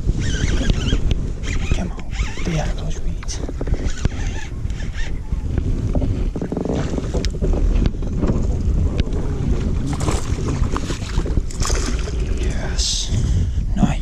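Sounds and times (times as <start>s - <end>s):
wind rumbling on microphone: 0.0s - 14.0s
water splashing: 9.0s - 12.6s.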